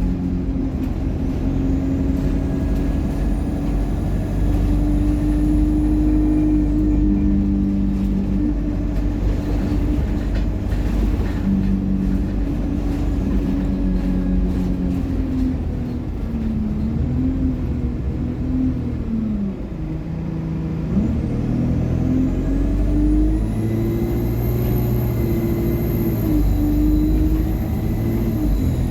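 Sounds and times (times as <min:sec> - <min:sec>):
bus engine drone: 0:00.0 - 0:28.9
bus gearbox and turbo whine: 0:00.0 - 0:28.9.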